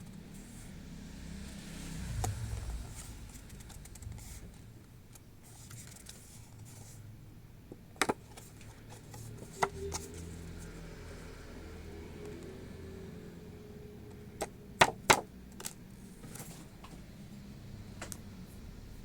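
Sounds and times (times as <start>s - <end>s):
low background rumble: 0.0s - 10.1s.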